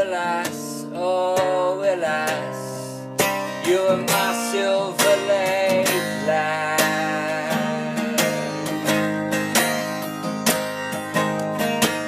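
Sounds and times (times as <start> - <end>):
person singing: 0.0 - 8.8
acoustic guitar strumming: 0.0 - 12.0.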